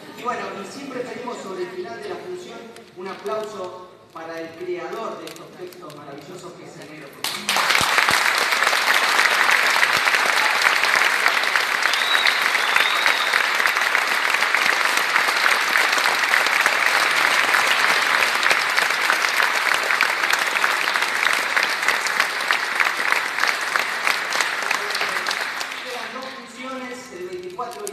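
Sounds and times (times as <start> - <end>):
audience applauding: 7.2 - 27.1.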